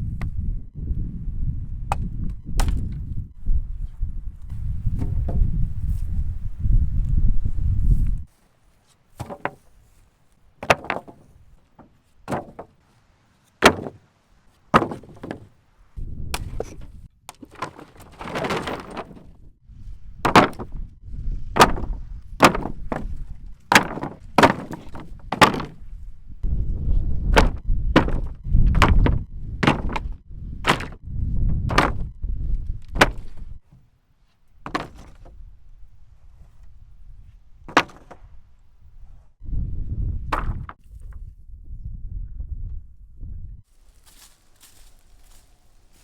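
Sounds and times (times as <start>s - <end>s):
sharp knocks and thunks: 1.9s - 3.1s, 4.5s - 5.7s, 9.2s - 9.8s, 10.6s - 12.8s, 13.6s - 15.6s, 16.3s - 19.4s, 20.1s - 26.6s, 27.2s - 33.8s, 34.6s - 35.4s, 37.7s - 38.4s, 40.3s - 41.2s.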